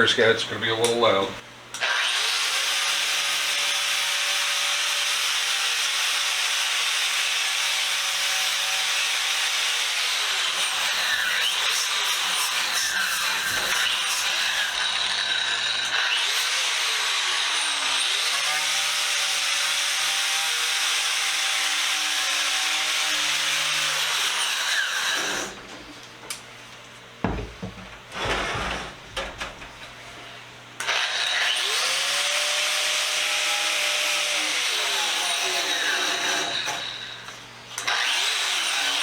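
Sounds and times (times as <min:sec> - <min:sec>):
power tool motor whining: 0:10.0 - 0:18.5
wire brush scraping metal: 0:10.8 - 0:14.8
knocks: 0:27.2 - 0:29.8.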